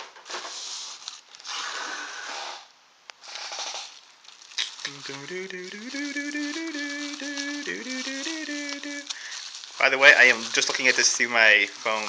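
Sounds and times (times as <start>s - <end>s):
plastic packaging crinkling: 0.1s - 2.1s, 3.2s - 12.0s
tune of held stepping notes: 4.9s - 9.1s.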